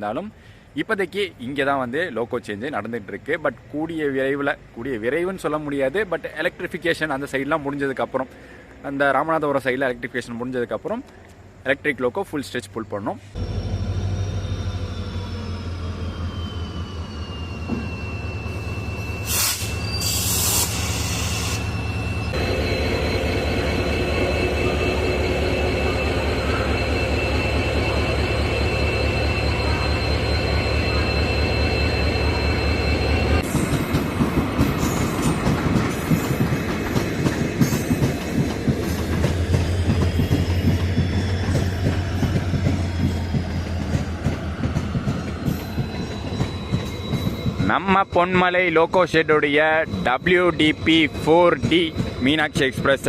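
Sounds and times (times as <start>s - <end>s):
diesel locomotive engine droning: 13.2s - 53.0s
high whine: 13.4s - 34.0s
train wheels clattering over rail joints: 33.5s - 47.7s.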